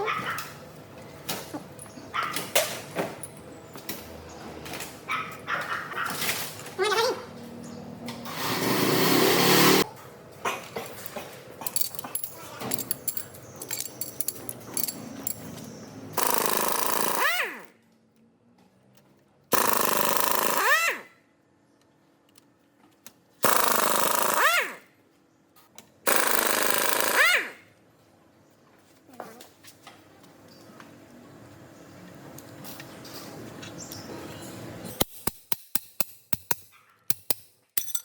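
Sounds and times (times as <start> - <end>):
power tool whirring: 8.2 - 9.9
parts clicking and clattering: 10.6 - 17.0, 34.9 - 38.0.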